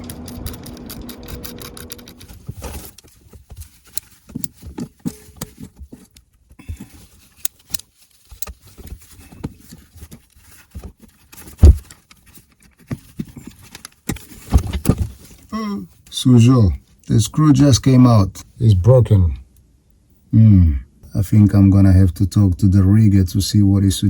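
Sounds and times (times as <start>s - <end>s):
loud thump: 11.6s - 11.8s.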